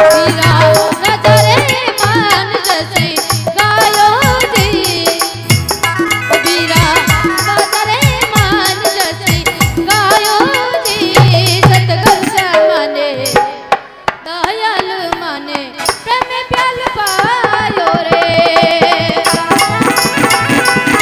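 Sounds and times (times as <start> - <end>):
fast hand-drum strokes: 0.0 - 21.0.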